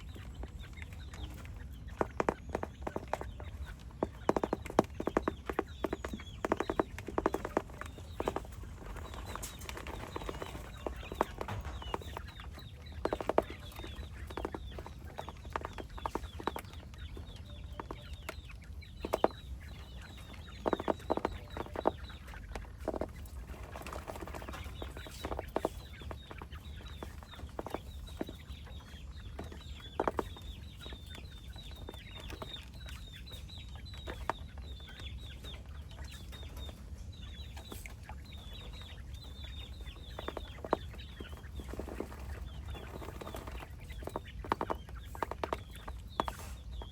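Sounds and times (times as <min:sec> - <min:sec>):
chickens clucking: 0:00.0 - 0:46.9
sharp pecking taps: 0:00.9 - 0:23.3.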